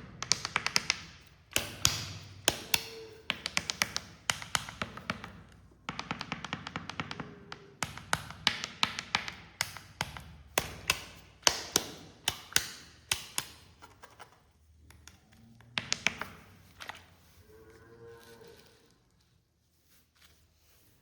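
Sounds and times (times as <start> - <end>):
sharp taps and clicks: 0.0 - 13.9.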